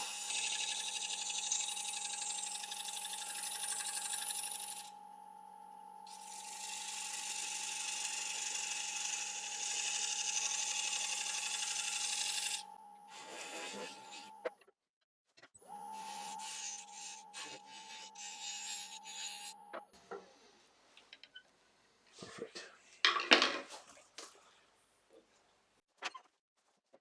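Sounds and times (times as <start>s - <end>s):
turning tool scraping wood: 0.0s - 4.9s, 6.1s - 14.4s, 15.9s - 20.6s
wood lathe motor whine: 0.0s - 14.4s, 15.6s - 19.8s.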